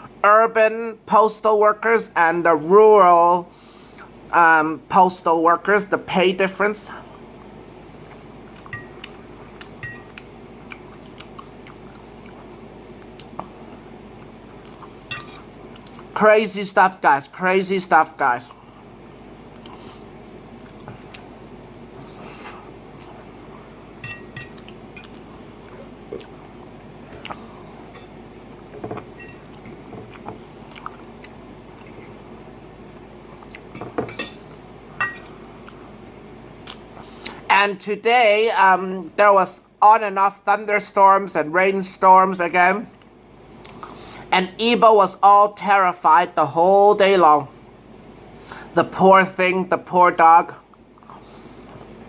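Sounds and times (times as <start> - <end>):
close-up chewing: 8.1 - 13.5, 29.4 - 32.1
cutlery clinking and scraping on plate: 15.1 - 15.4.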